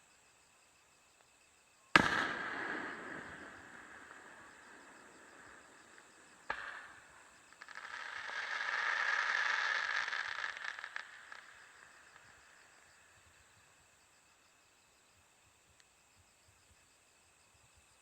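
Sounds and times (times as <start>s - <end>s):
insects chirping faintly: 0.0s - 18.0s
firework sharp bang: 2.0s - 12.4s
fireworks crackling pops: 2.0s - 13.6s.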